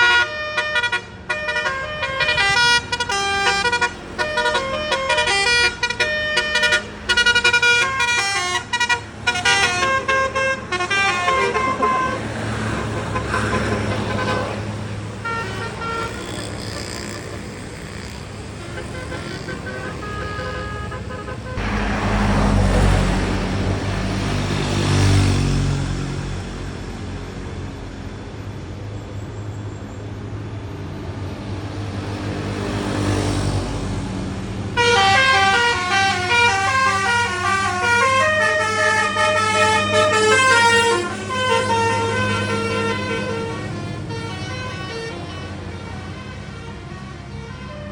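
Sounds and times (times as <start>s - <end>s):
multi-tone bus horn tune: 0.0s - 25.8s, 34.7s - 47.9s
bus engine running: 0.0s - 47.9s
road noise: 0.0s - 47.9s
rush of noise: 21.6s - 25.3s.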